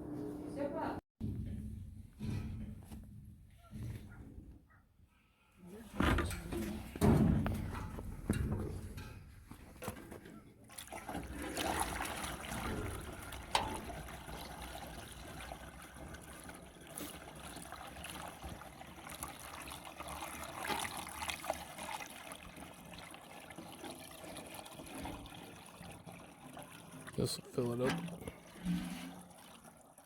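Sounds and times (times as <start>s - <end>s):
water running and trickling: 10.7s - 30.0s.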